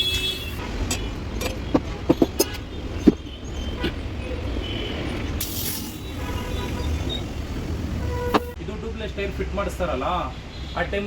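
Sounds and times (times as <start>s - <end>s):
road traffic: 0.0s - 11.0s
sharp knocks: 0.8s - 4.1s.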